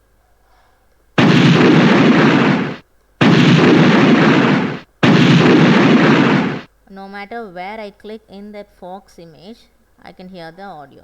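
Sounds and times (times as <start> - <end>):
bursts of rough rushing noise: 1.2 - 6.7.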